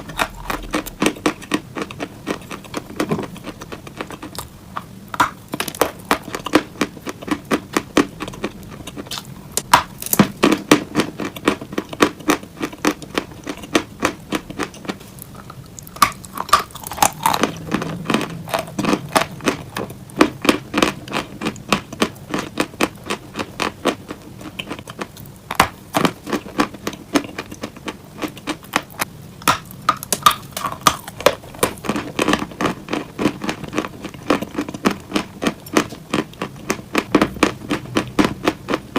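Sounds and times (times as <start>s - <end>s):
crisp crunching close to microphone: 14.7s - 19.8s.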